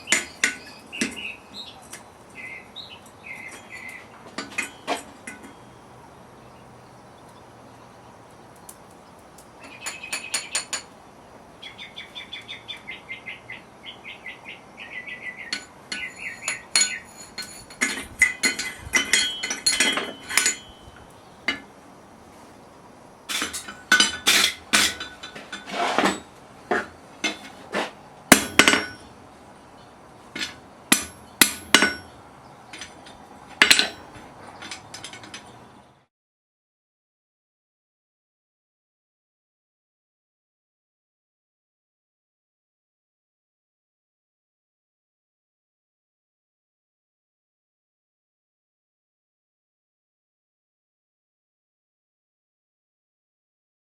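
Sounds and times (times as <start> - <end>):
hammer striking metal on anvil: 15.5 - 20.9, 28.3 - 29.1, 30.4 - 32.1.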